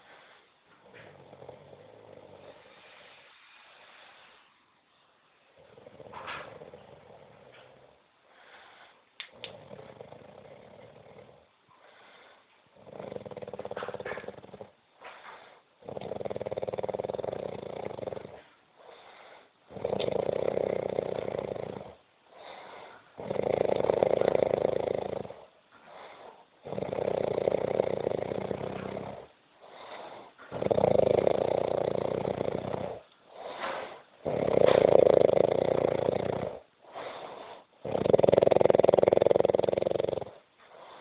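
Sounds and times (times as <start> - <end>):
person snoring heavily: 1.1 - 3.2, 9.3 - 12.2, 12.8 - 14.7, 15.8 - 18.4, 19.0 - 41.0.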